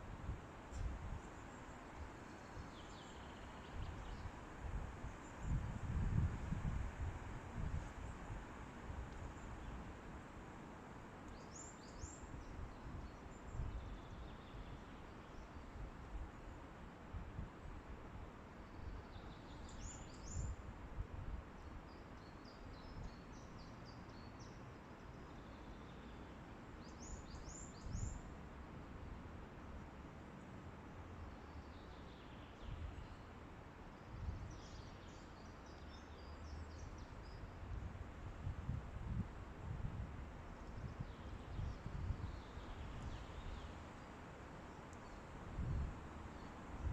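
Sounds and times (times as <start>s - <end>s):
wind rumbling on microphone: 0.0s - 2.8s, 3.6s - 10.1s, 12.2s - 16.4s, 36.7s - 43.9s, 45.1s - 46.9s
wind buffeting microphone: 3.8s - 9.1s, 37.8s - 43.5s.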